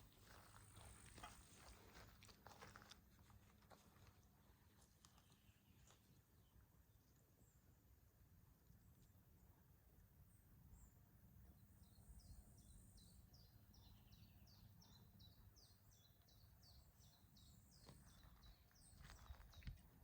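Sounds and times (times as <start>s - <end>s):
faint rapid bird chirps: 10.3s - 20.0s.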